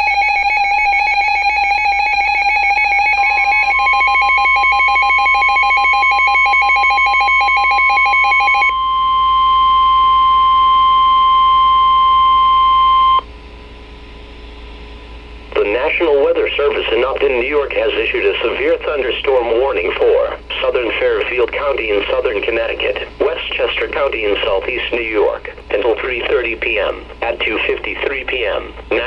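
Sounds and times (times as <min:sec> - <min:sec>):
steady alarm tone: 0:00.0 - 0:13.3
faint steady hum: 0:00.0 - 0:29.0.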